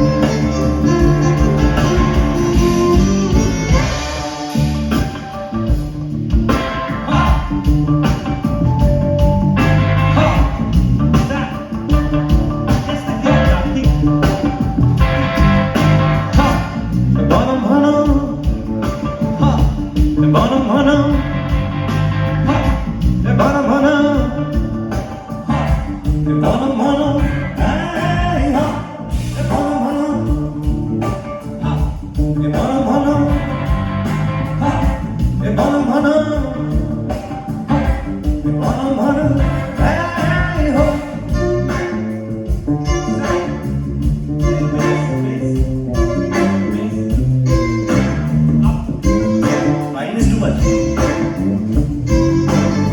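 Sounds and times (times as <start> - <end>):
guitar: 0.0 - 52.9
live band playing a song: 0.0 - 52.9
steady drum beat: 0.0 - 52.9.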